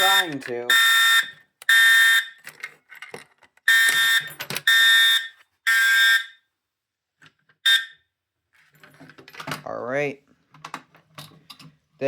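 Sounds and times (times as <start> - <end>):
fire alarm horn blasts: 0.0 - 2.4, 3.7 - 6.4, 7.6 - 8.0.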